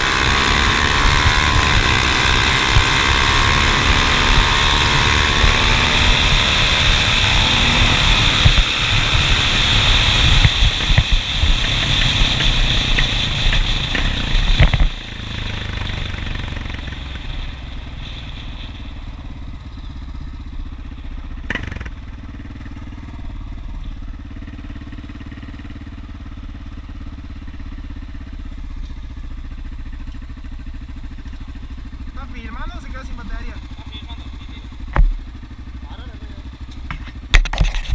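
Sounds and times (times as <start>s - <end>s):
loud rushing noise: 0.0s - 19.5s
motorcycle engine at low speed: 0.0s - 37.9s
motorcycles running hard: 0.0s - 37.9s.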